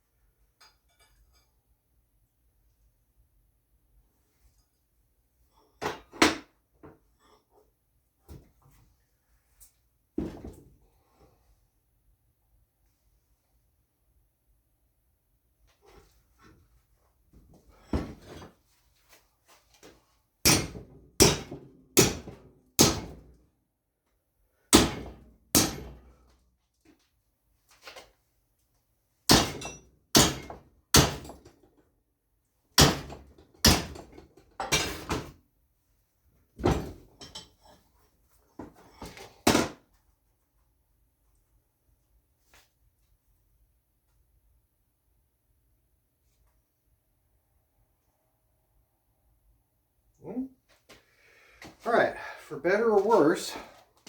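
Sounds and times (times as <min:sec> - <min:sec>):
hammer striking steel: 0:20.5 - 0:23.2, 0:24.8 - 0:25.9, 0:29.3 - 0:31.3.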